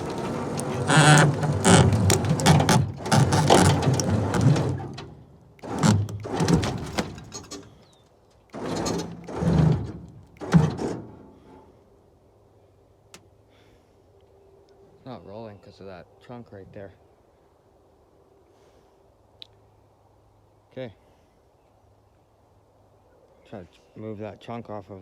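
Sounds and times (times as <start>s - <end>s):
metal clanking and creaking: 0.0s - 7.9s, 8.6s - 11.7s
metal scrapes and clunks: 0.0s - 11.8s.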